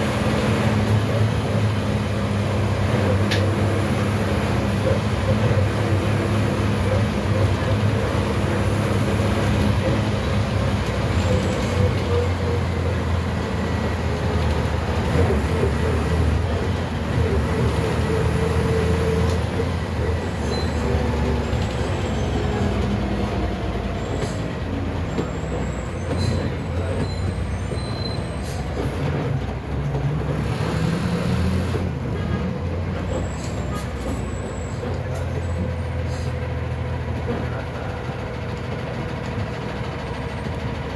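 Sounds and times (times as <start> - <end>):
bus engine running: 0.0 - 40.9
brief high squeaks: 20.4 - 20.9.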